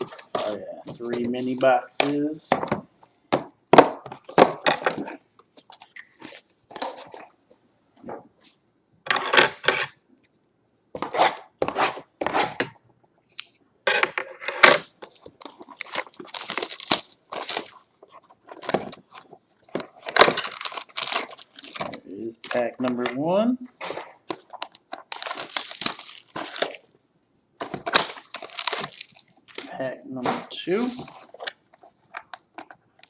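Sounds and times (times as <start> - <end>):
cardboard and wrapping tearing: 15.0 - 17.9, 19.8 - 22.6, 23.9 - 26.9, 27.8 - 29.7.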